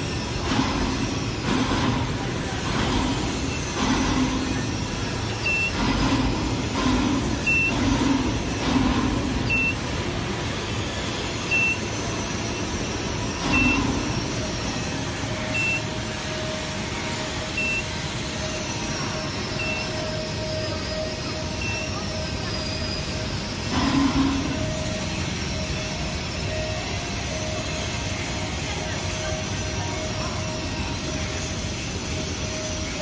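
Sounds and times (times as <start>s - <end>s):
machinery and site noise: 0.0s - 33.0s
high electronic beep: 5.3s - 6.6s, 7.2s - 8.3s, 9.2s - 10.0s, 11.3s - 16.3s, 17.4s - 28.1s.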